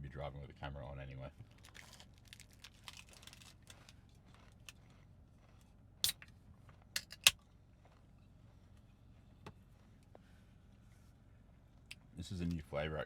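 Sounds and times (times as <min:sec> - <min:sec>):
soft rustling: 0:07.8 - 0:11.8.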